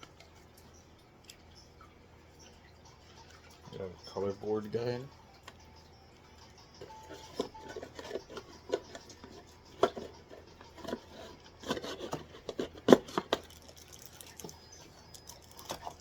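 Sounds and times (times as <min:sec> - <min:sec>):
cardboard and paper rubbing: 0:07.1 - 0:13.5.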